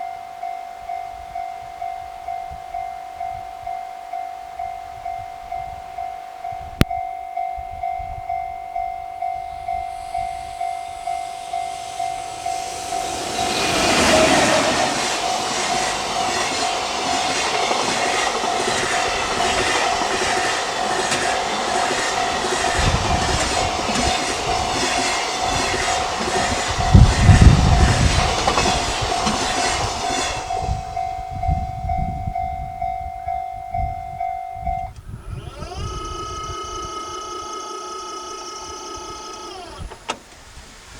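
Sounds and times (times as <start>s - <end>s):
freight train passing: 0.0s - 39.8s
level-crossing warning bell: 0.0s - 39.8s
wheels clacking over rail joints: 10.6s - 30.8s.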